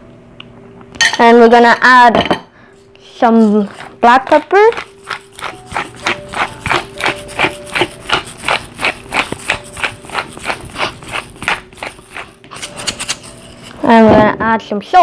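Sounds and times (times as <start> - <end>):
pepper grinder crunching: 3.2 - 13.9.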